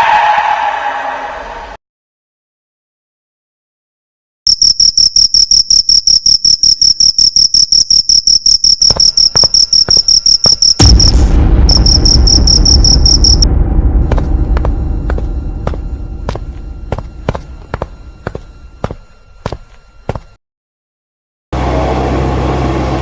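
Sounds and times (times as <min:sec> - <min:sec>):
crickets chirping: 0:04.5 - 0:13.5, 0:14.1 - 0:20.4
loud low rumble: 0:10.8 - 0:18.8.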